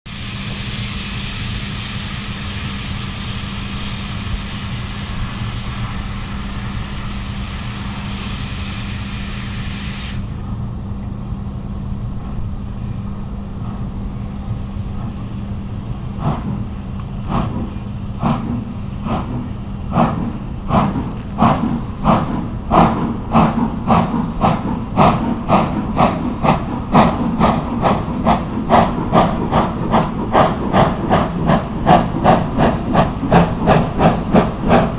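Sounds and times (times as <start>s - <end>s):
steam hissing: 0.1s - 10.4s, 16.1s - 34.9s
steam locomotive exhaust chuffs: 0.1s - 10.9s, 12.0s - 34.9s.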